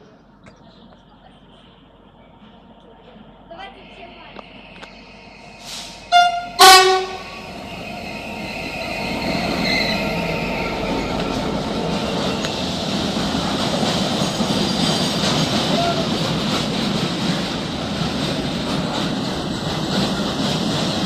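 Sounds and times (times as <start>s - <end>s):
train wheels rumbling on rails: 0.0s - 21.0s
faint wheel squeal: 7.4s - 11.5s.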